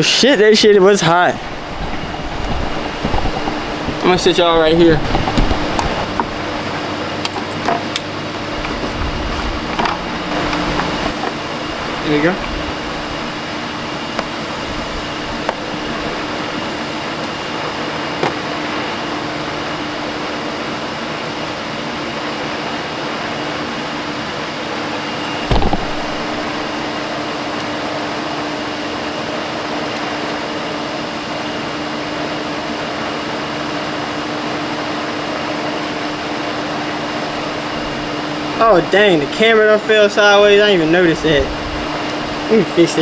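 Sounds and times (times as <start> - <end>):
fan motor whirring: 0.0 - 21.8, 23.7 - 28.7, 31.5 - 43.0
small knock: 25.5 - 26.7
thump: 25.5 - 26.7.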